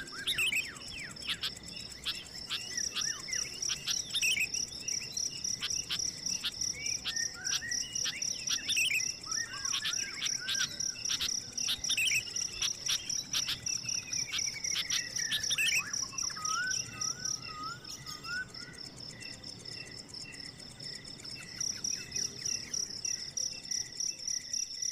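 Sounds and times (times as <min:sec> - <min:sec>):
birds calling: 0:00.0 - 0:18.9
insects chirping in high trill: 0:00.0 - 0:24.9.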